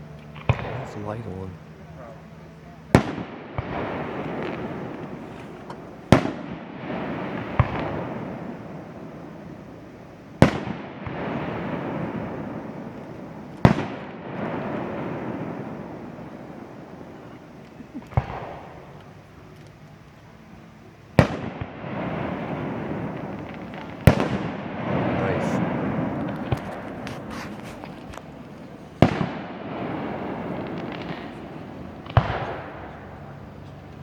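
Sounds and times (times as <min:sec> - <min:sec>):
fireworks bangs: 0:00.0 - 0:01.6, 0:02.9 - 0:19.6, 0:21.1 - 0:34.0
echoing rumble: 0:21.5 - 0:33.6.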